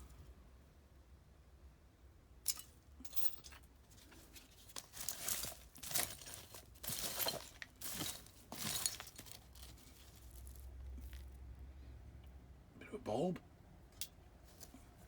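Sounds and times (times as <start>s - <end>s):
digging in gritty soil: 3.9s - 11.5s.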